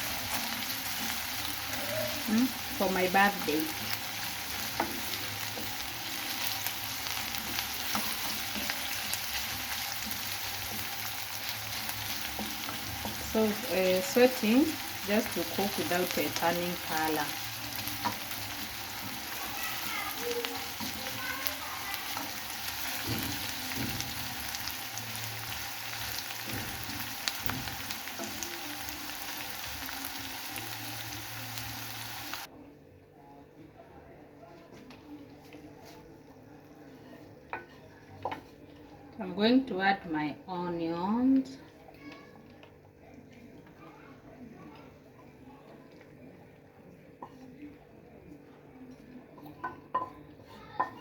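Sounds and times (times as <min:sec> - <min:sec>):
food sizzling in hot oil: 0:00.0 - 0:32.5
soft knocks of stirring: 0:34.6 - 0:39.2, 0:41.4 - 0:51.0.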